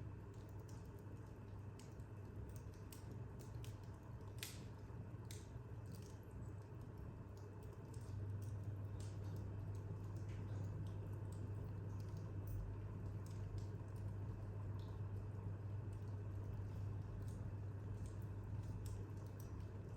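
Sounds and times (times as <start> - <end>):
low steady hum: 0.0 - 19.9
wood fire crackling: 0.0 - 19.9.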